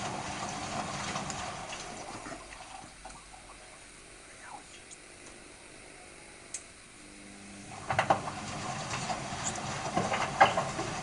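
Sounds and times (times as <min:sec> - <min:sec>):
washing machine drum rumbling: 0:00.0 - 0:03.5, 0:07.7 - 0:11.0
faint hum: 0:00.0 - 0:11.0.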